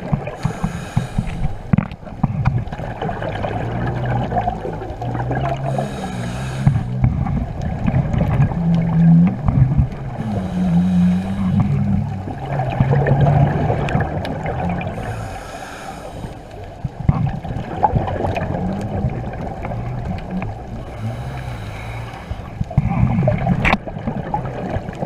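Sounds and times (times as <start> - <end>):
water rushing and gurgling: 0.0 - 25.0.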